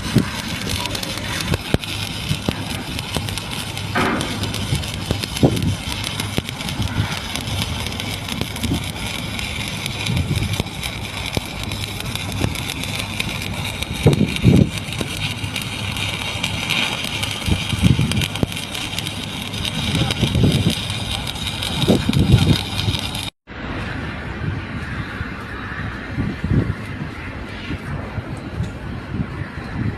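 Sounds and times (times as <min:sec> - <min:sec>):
welding arc crackling: 0:00.0 - 0:23.4.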